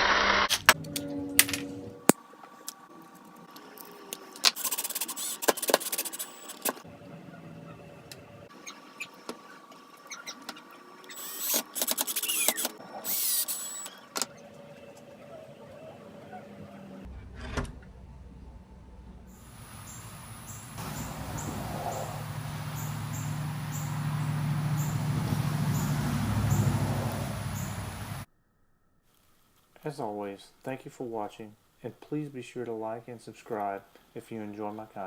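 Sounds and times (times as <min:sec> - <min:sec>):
power drill running: 0:00.0 - 0:00.5, 0:04.6 - 0:06.7, 0:11.1 - 0:14.0
steady low hum: 0:17.9 - 0:28.3.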